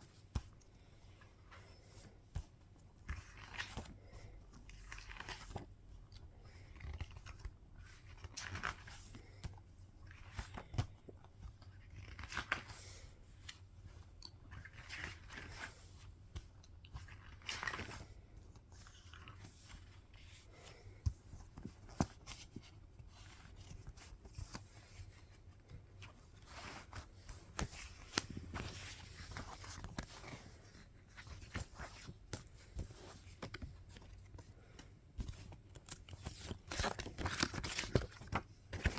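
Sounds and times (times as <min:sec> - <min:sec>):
paper and plastic packaging rustling: 0:16.9 - 0:38.9.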